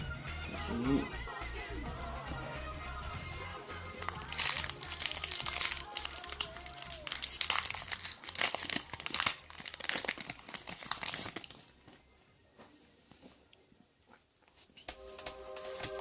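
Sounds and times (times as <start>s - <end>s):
faint background music: 0.0s - 16.0s
foil wrapper crinkling and tearing: 4.0s - 11.9s.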